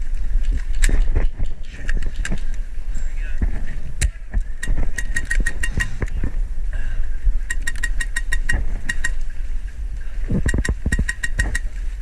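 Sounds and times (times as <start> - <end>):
low rumble: 0.0 - 7.6.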